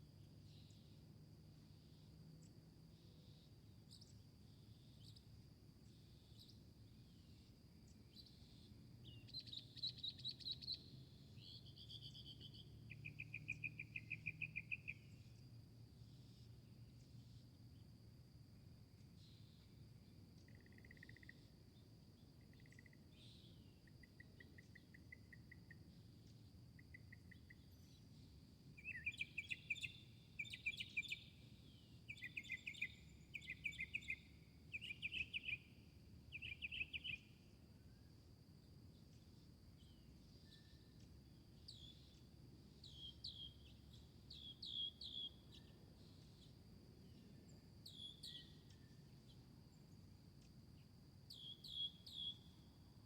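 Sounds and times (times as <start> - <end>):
birds singing: 28.8 - 31.2, 32.1 - 35.6, 36.3 - 37.2, 42.8 - 46.4.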